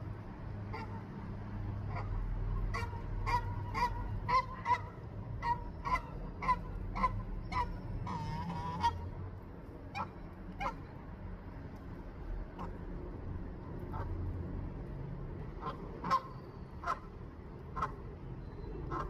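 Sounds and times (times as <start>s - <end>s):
goose honking: 1.9s - 9.1s, 9.9s - 10.8s, 15.6s - 17.1s, 17.7s - 18.0s.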